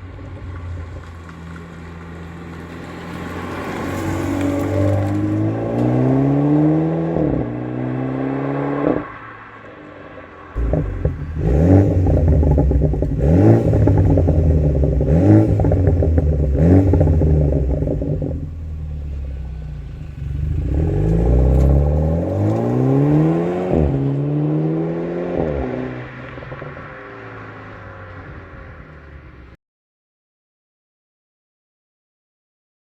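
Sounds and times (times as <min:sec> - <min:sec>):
car engine revving: 0:00.0 - 0:29.4
exhaust crackles: 0:09.8 - 0:29.5.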